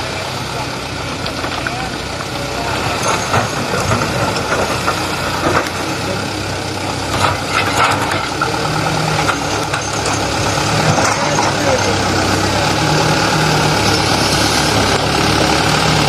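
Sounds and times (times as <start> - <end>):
heavy diesel engine running: 0.0 - 16.0
knocks and clatter: 1.2 - 6.2, 6.9 - 12.0.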